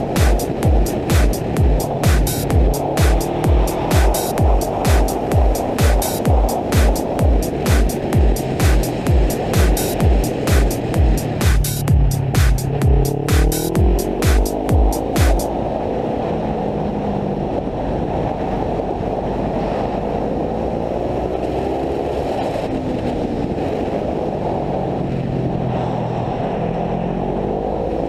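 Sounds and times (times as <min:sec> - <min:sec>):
kart engine revving: 0:00.0 - 0:05.8
steady rushing noise: 0:00.0 - 0:28.0.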